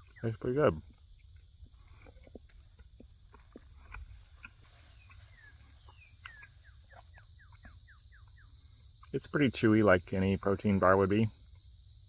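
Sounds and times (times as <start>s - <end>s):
person chewing sticky food: 1.2s - 7.8s.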